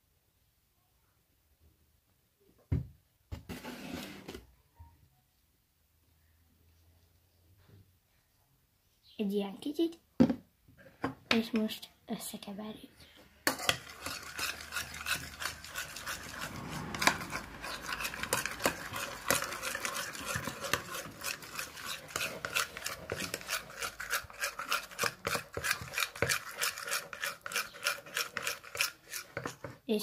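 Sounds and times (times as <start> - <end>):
utensil scraping container: 13.4 - 29.8.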